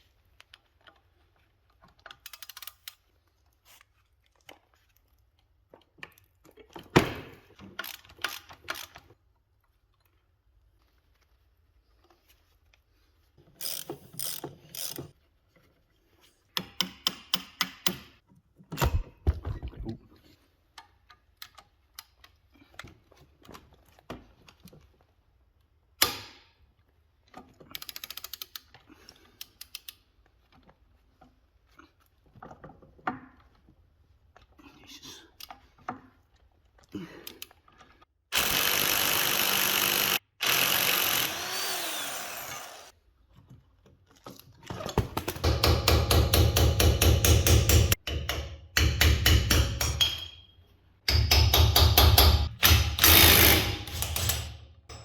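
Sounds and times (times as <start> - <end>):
ratchet clicking: 7.8 - 9.0, 13.6 - 15.1, 51.9 - 54.6
power tool running: 38.3 - 42.9, 53.0 - 54.3.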